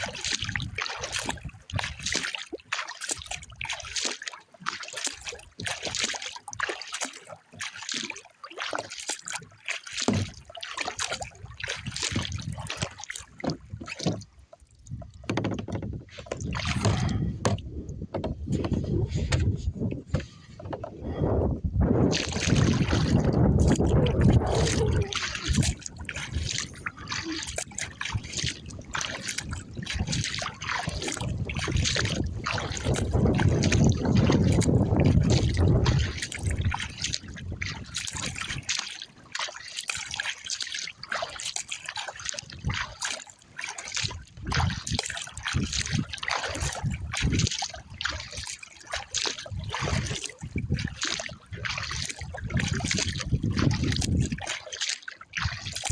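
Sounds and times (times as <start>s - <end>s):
wind buffeting microphone: 0.0s - 2.2s, 11.8s - 12.9s, 14.8s - 38.7s, 44.1s - 48.4s, 49.4s - 54.4s, 55.4s - 55.9s
kayak paddle strokes splashing: 0.0s - 55.9s
water lapping at hull: 0.0s - 55.9s.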